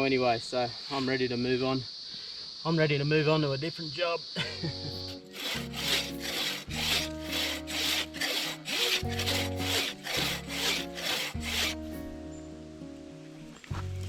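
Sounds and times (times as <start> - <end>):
hand saw cutting wood: 5.0 - 12.1.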